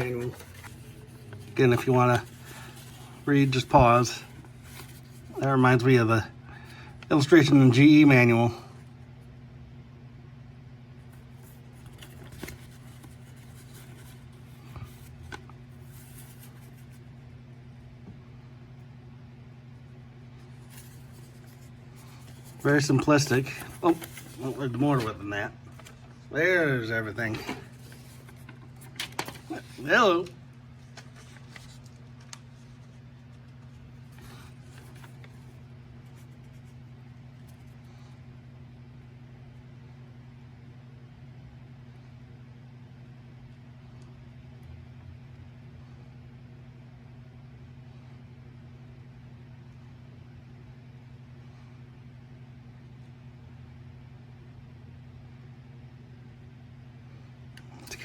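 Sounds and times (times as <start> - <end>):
paper crinkles and clicks: 0.0 - 5.4, 11.2 - 17.0, 20.6 - 26.1, 27.2 - 36.7
paper pages turning: 0.0 - 6.0, 11.2 - 17.0, 20.4 - 36.8
steady low hum: 0.0 - 58.0.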